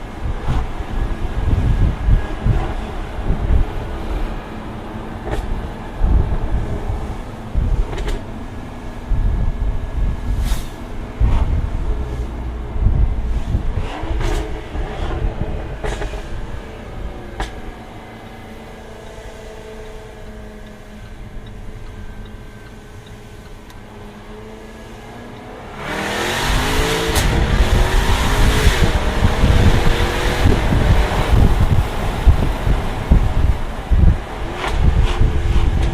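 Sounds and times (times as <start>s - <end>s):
car engine accelerating: 0.2s - 35.9s
exhaust cracks: 5.2s - 23.9s, 25.8s - 35.9s.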